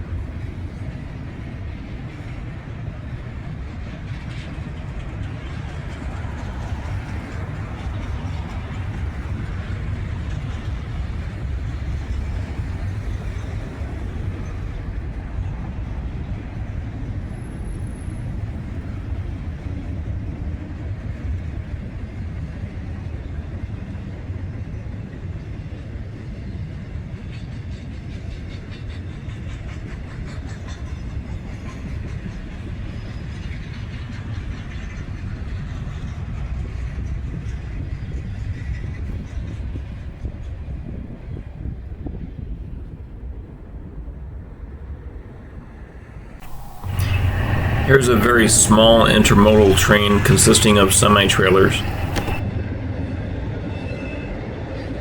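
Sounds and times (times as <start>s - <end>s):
wheels clicking over rails: 46.4s - 52.4s
freight train rumble: 46.4s - 52.6s.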